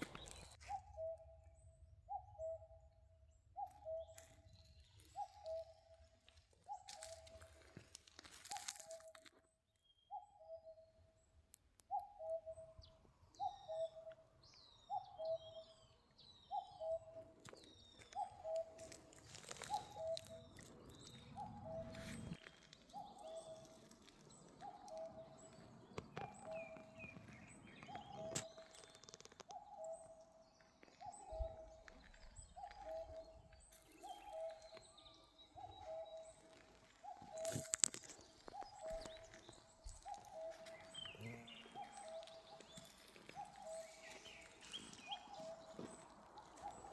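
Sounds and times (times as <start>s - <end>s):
small birds chirping trills: 0.0s - 2.6s, 3.4s - 9.2s, 9.8s - 46.9s.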